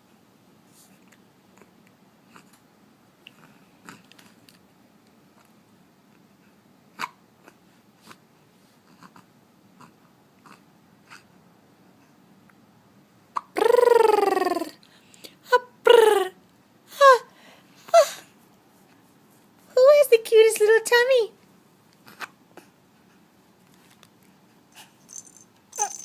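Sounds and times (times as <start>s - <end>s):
baby hiccuping: 6.9s - 7.2s, 13.3s - 13.6s, 25.8s - 26.0s.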